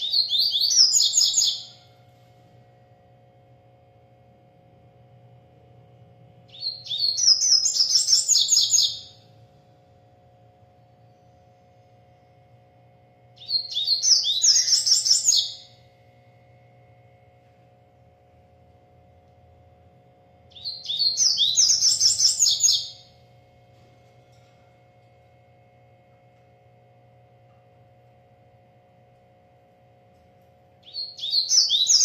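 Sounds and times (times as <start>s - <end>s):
bird twittering song: 0.0s - 1.8s, 6.5s - 9.2s, 13.4s - 15.8s, 20.5s - 23.2s, 30.8s - 32.0s
faint steady hum: 0.0s - 32.0s.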